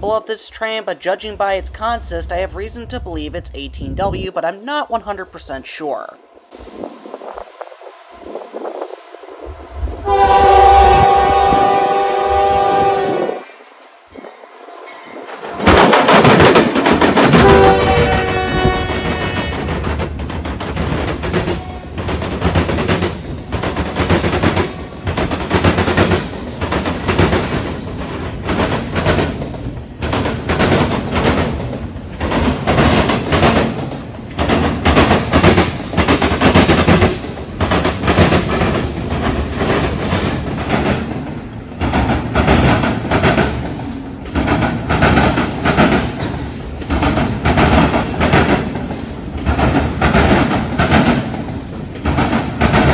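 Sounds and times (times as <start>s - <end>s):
freight train wheels clattering: 13.7s - 52.9s.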